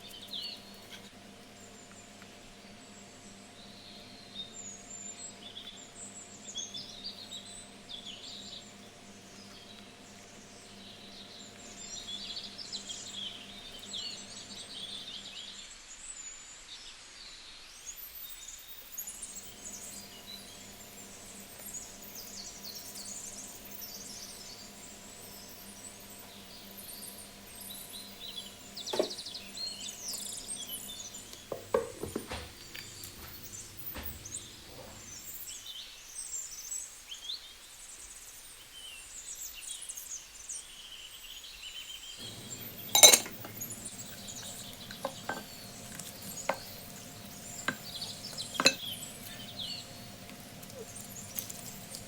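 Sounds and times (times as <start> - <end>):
dishes and utensils clinking: 28.9 - 29.2, 31.4 - 35.2, 42.2 - 52.0
low steady hum: 42.2 - 52.0.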